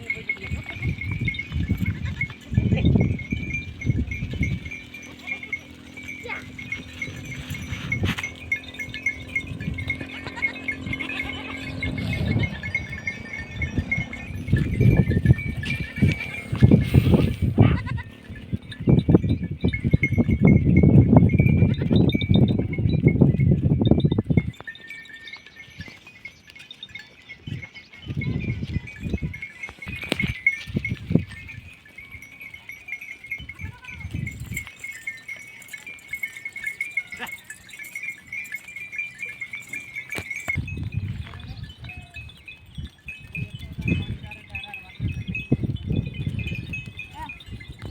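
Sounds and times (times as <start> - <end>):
sheep and goats bleating: 0.0 - 3.3, 4.8 - 18.4, 36.2 - 37.8
livestock bells clinking: 0.0 - 47.9
high chirping: 6.6 - 19.7
low rumbling thumps: 10.8 - 17.8.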